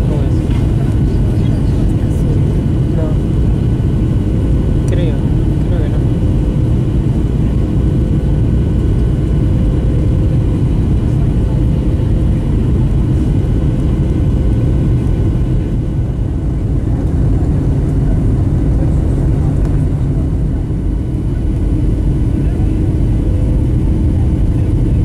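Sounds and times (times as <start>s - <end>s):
airplane cabin engine rush: 0.0s - 25.0s.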